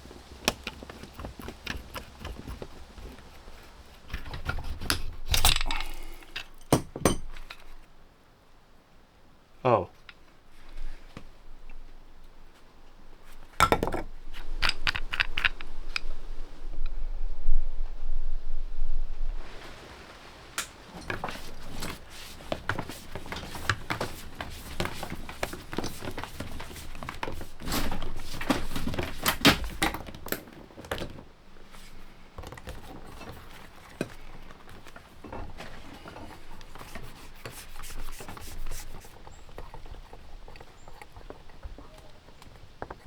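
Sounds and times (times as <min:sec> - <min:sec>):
knocks and clunks from hand work: 0:00.4 - 0:05.7, 0:06.4 - 0:07.7, 0:13.6 - 0:15.6.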